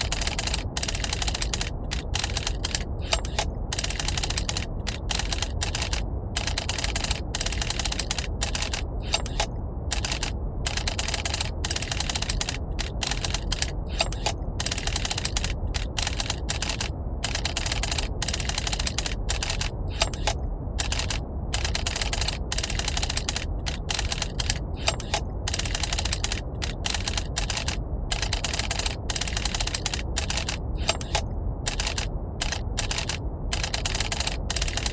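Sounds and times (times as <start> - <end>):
low brown-noise rumble: 0.0 - 34.9.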